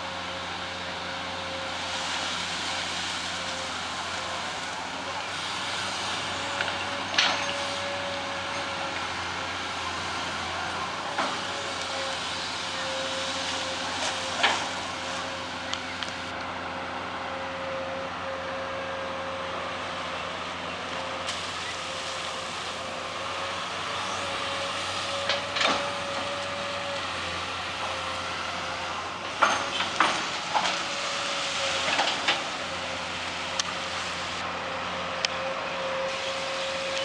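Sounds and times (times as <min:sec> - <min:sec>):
excavator engine running: 0:00.0 - 0:37.0.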